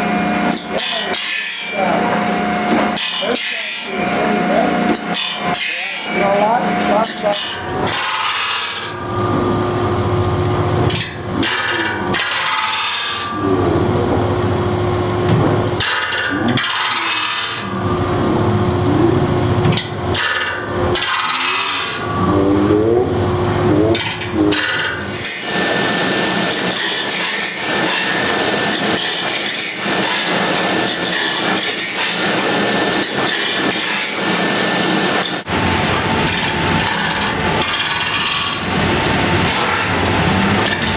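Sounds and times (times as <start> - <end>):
stone scraping saw teeth: 0.5 - 2.0, 4.9 - 6.4, 25.0 - 35.5.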